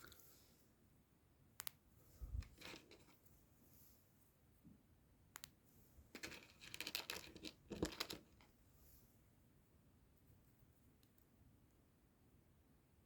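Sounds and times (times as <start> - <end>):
plastic parts clicking and rattling: 2.4 - 3.2, 6.2 - 8.5.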